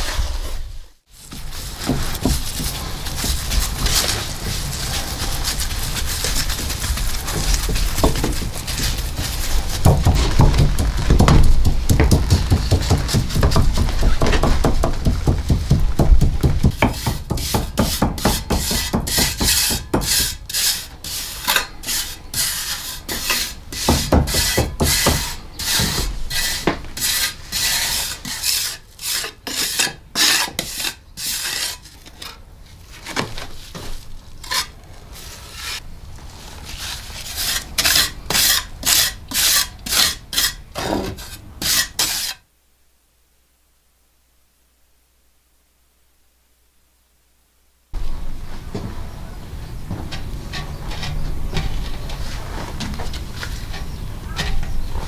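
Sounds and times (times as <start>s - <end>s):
hand rasping strokes: 1.3s - 31.8s.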